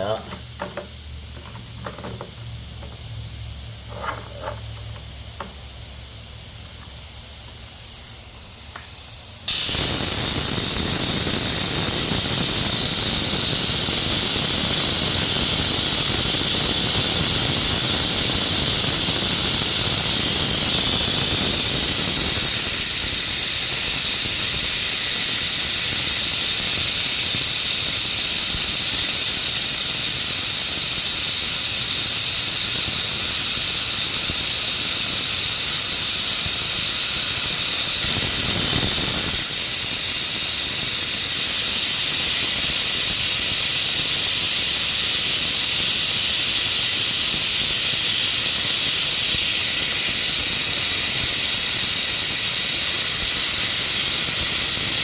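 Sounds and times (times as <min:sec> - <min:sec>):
compressed-air hose hissing: 0:00.0 - 0:55.0
suction tool rushing air: 0:00.0 - 0:55.0.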